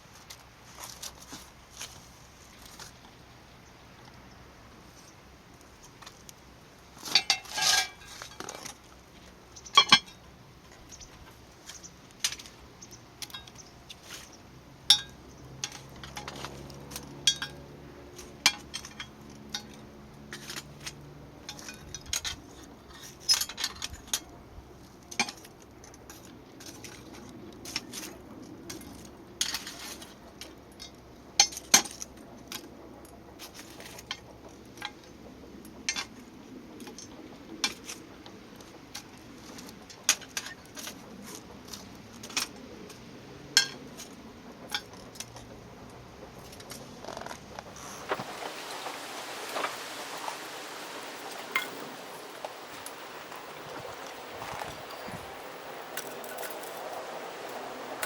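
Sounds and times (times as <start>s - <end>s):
metal utensils and cookware clinking: 7.1s - 8.7s.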